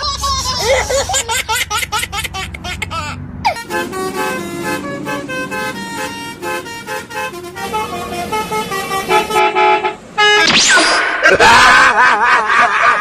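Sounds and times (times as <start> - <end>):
bus horn playing a tune: 3.4 - 10.5.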